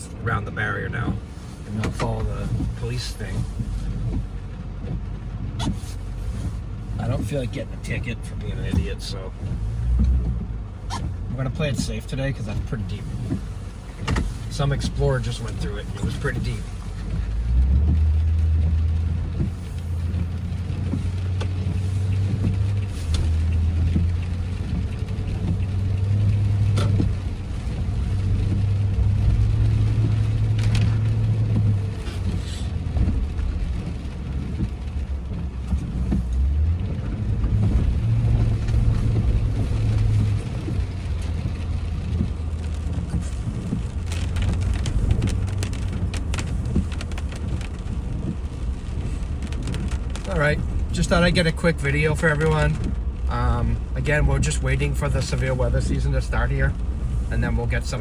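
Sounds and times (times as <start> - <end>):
car engine idling: 0.0 - 58.0
light taps: 12.5 - 51.1.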